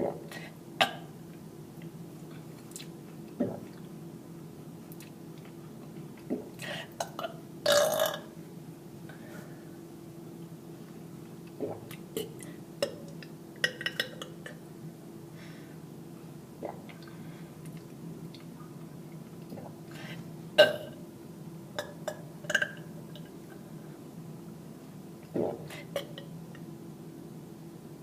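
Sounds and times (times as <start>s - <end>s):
person burping: 7.0s - 8.3s.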